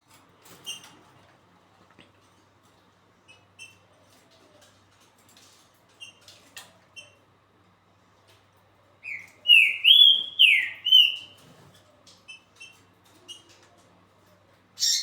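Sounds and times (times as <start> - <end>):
bird singing whistles and chirps: 9.0 - 11.4.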